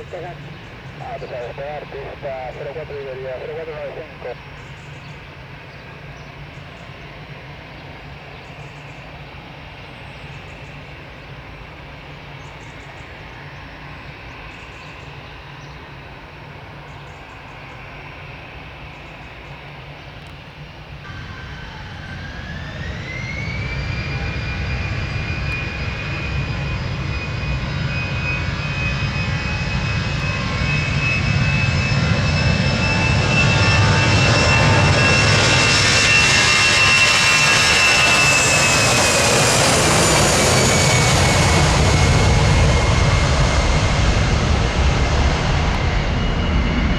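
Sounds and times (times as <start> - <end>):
jet engines spooling up: 21.1 - 46.9.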